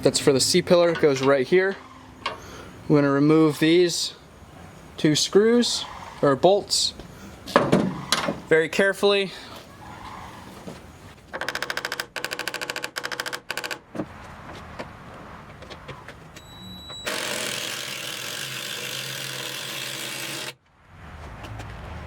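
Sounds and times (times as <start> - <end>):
impact driver rattling: 11.4 - 13.8.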